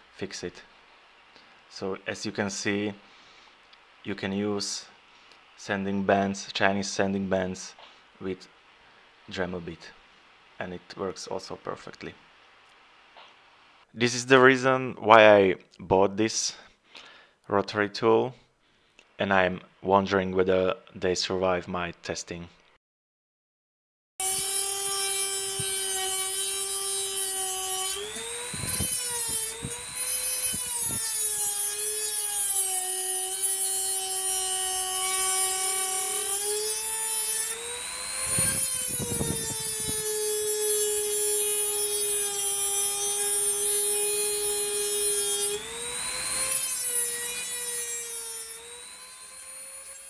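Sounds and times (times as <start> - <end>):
rotary tool cutting disc grinding: 24.2 - 50.0.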